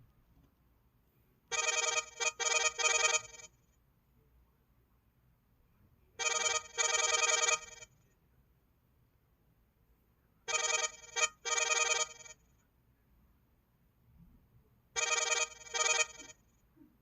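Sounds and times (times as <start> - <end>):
electronic phone ringtone: 1.5 - 3.6, 6.2 - 7.9, 10.5 - 12.4, 15.0 - 16.4.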